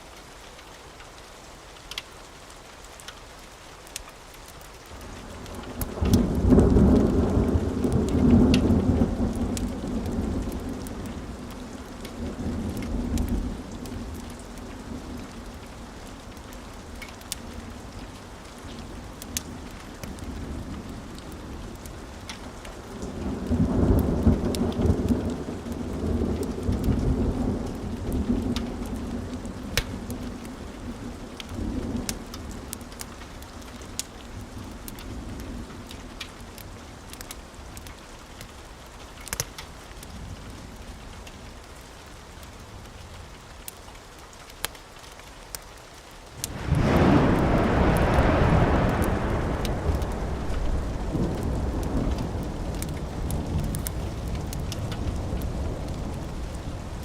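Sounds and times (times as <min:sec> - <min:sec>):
steady rain: 0:00.0 - 0:57.0
wood fire crackling: 0:00.1 - 0:57.0
rumbling thunder: 0:05.2 - 0:15.6, 0:22.9 - 0:32.7, 0:46.4 - 0:57.0.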